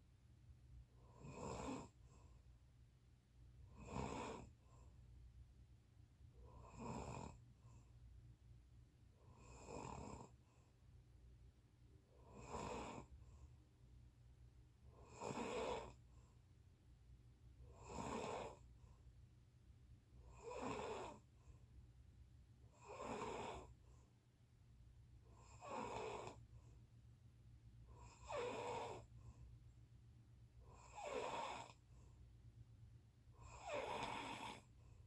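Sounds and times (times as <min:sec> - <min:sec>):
person snoring loudly: 0:28.2 - 0:29.0, 0:30.9 - 0:31.8, 0:33.5 - 0:34.6.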